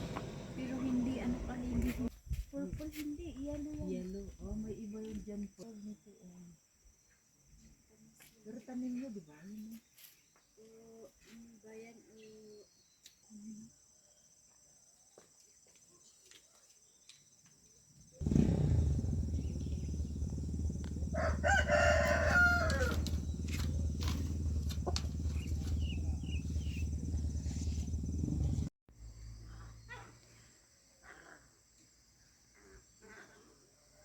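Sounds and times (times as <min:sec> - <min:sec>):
loud low rumbling: 0:00.0 - 0:02.1, 0:18.2 - 0:28.7
rooster crowing: 0:19.0 - 0:26.4.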